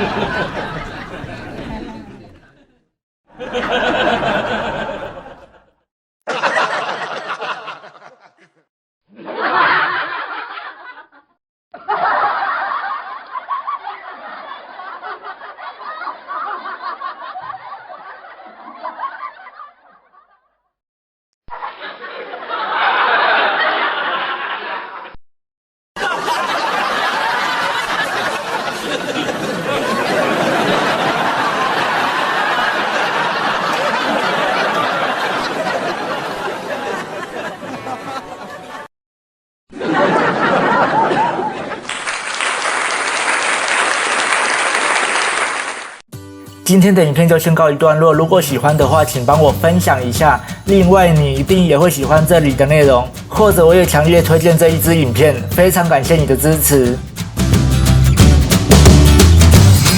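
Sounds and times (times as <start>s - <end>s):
dense laughter: 0.0s - 2.8s, 3.4s - 20.4s, 21.5s - 25.2s, 26.0s - 38.9s, 39.7s - 41.9s
recorded laughs: 0.0s - 2.8s, 3.4s - 20.6s, 21.5s - 25.2s, 26.0s - 38.9s.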